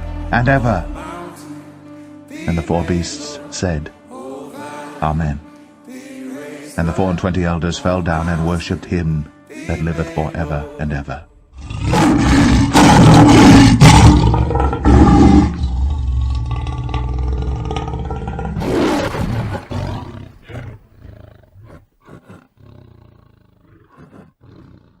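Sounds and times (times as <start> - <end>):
lion grunting: 11.5 - 25.0
lion roaring: 11.5 - 25.0.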